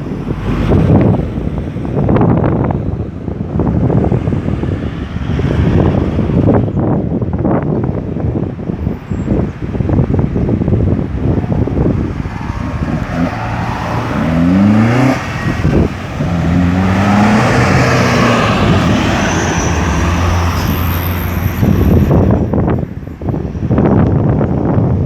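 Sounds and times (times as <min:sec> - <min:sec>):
heavy vehicle engine drone: 0:07.9 - 0:24.8
vehicle accelerating: 0:10.3 - 0:22.8.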